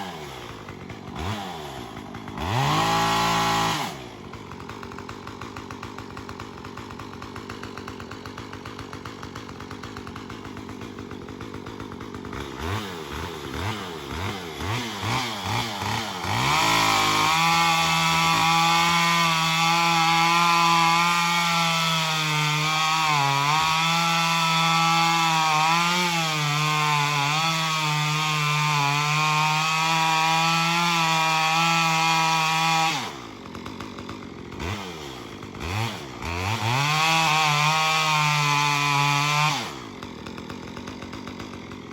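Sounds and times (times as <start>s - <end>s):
chainsaw idling and revving: 0.0s - 41.9s.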